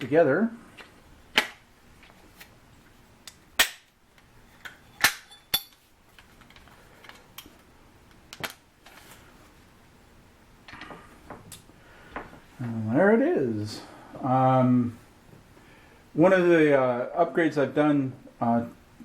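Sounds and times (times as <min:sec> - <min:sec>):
metallic ring: 0:04.8 - 0:05.8.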